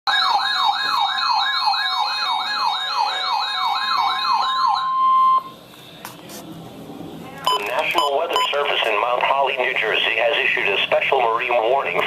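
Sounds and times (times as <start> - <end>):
falling siren-like alert tone: 0.1 - 5.5
steady high beep: 7.5 - 8.7.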